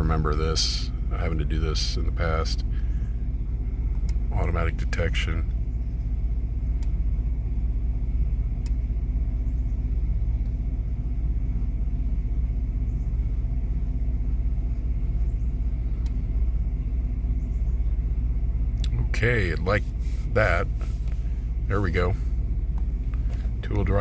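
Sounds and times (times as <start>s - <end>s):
truck engine idling: 0.0s - 24.0s
faint clicks: 3.9s - 4.2s, 6.8s - 7.0s, 16.0s - 16.2s.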